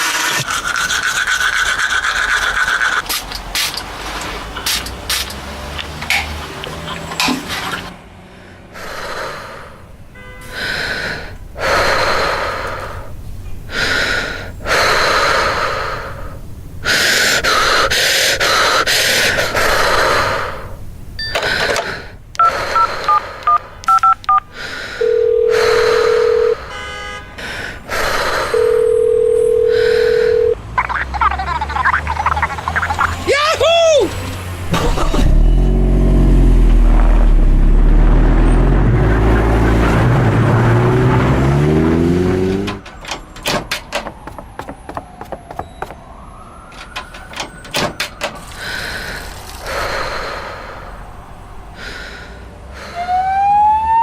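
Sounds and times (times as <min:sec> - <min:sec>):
telephone keypad tones: 0:22.4 - 0:26.6, 0:28.6 - 0:30.6
telephone ringback tones: 0:25.0 - 0:26.6, 0:28.5 - 0:30.6.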